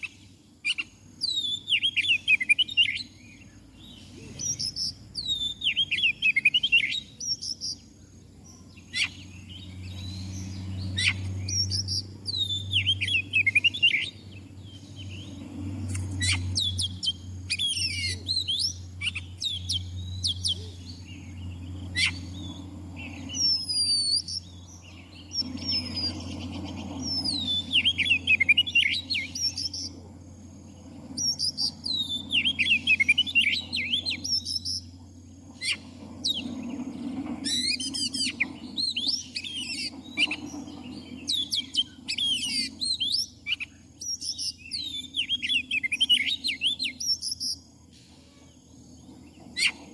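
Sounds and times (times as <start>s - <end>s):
steady low hum: 0.0s - 49.9s
bird singing whistled phrases: 0.7s - 3.2s, 4.2s - 7.8s, 8.8s - 14.2s, 23.2s - 24.6s, 25.2s - 29.9s, 31.2s - 34.9s, 41.2s - 47.6s.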